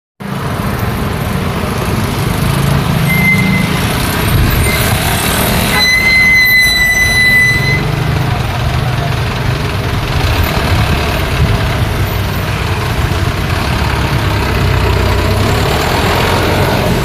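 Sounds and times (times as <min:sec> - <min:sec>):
cars and trucks driving past: 0:00.2 - 0:17.0
high squeal: 0:03.0 - 0:08.2.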